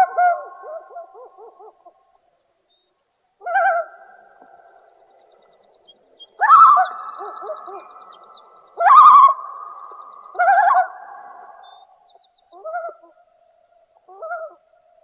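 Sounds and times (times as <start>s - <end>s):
loon calling: 3.4s - 4.9s, 5.9s - 13.3s, 14.0s - 14.7s.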